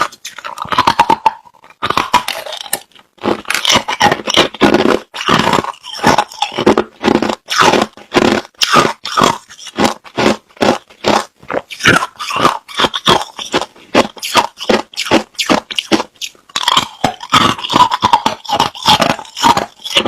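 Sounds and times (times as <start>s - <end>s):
chewing hard ice crunches: 0.0s - 20.0s.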